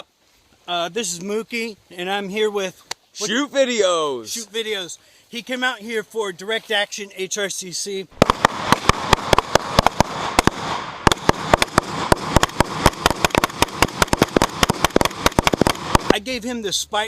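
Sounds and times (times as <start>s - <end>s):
rapid rifle fire: 8.2s - 16.2s.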